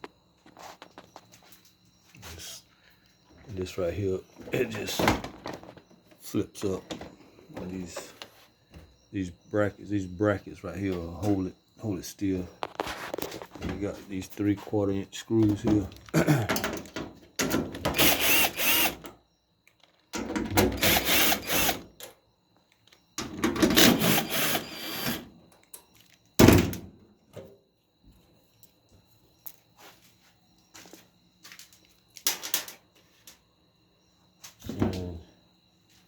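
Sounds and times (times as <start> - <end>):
cordless drill running: 18.0 - 19.0, 20.8 - 21.8, 23.8 - 25.2.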